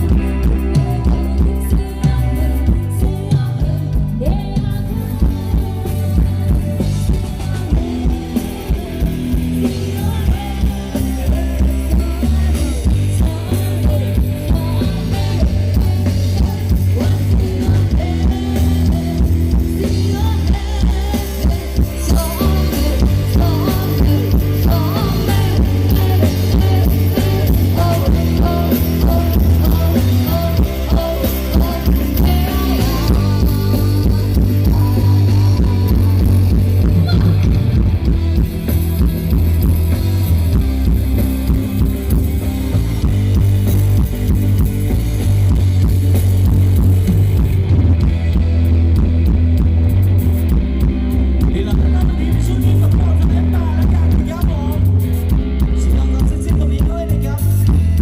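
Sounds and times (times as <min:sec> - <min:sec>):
person singing: 0:00.0 - 0:37.9
rock music: 0:00.0 - 0:58.0.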